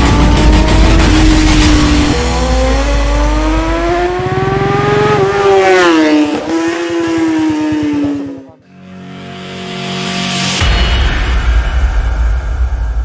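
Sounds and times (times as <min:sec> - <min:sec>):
motorcycle engine revving high: 0:00.0 - 0:08.6
road rumble: 0:00.0 - 0:08.6
wind: 0:01.7 - 0:08.7.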